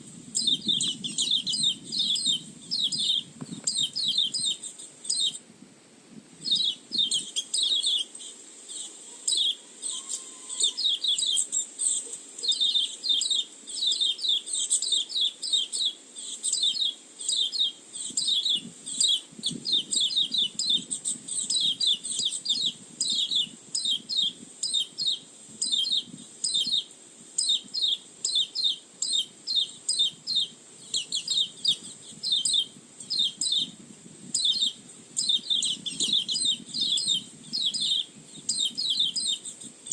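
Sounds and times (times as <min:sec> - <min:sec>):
bird short high chirps: 0:08.7 - 0:33.7.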